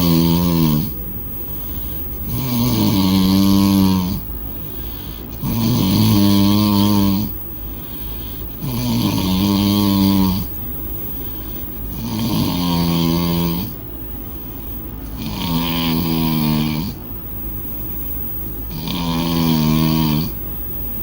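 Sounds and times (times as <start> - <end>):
person snoring loudly: 0.0 - 0.9, 2.3 - 4.2, 4.8 - 10.5, 11.9 - 13.8, 15.1 - 17.0, 18.7 - 20.4
quiet breathing: 0.0 - 21.0.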